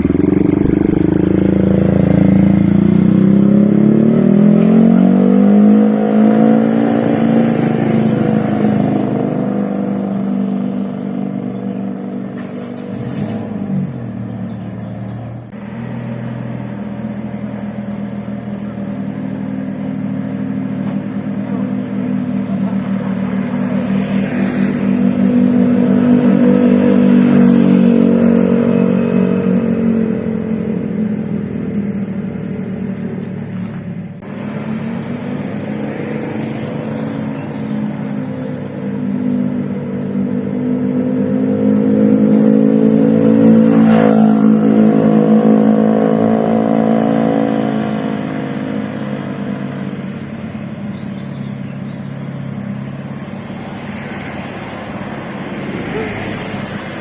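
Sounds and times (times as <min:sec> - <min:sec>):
scooter engine exhaust: 0:00.0 - 0:57.0.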